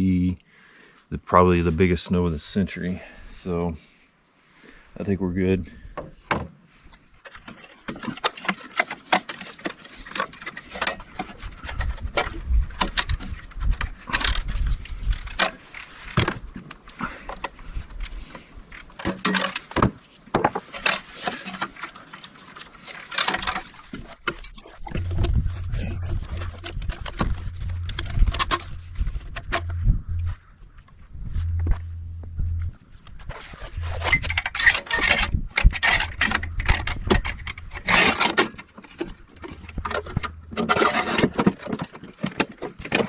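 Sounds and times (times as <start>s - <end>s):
low rumble: 24.8s - 37.9s, 39.2s - 40.7s.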